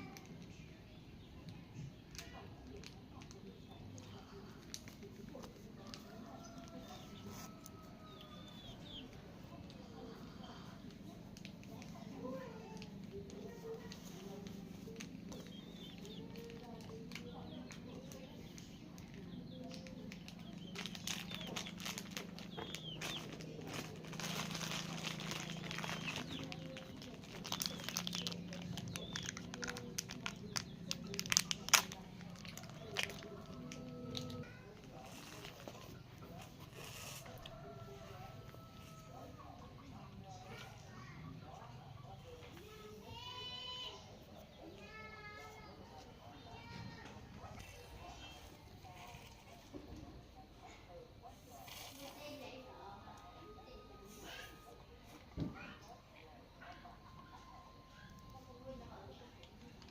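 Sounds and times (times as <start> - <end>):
crinkling and rustling: 10.8 - 39.2.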